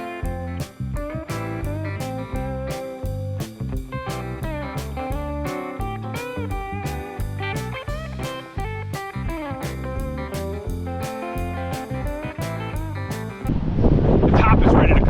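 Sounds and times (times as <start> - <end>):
steady drum beat: 0.0 - 13.5
blues-rock electric guitar: 0.0 - 13.6.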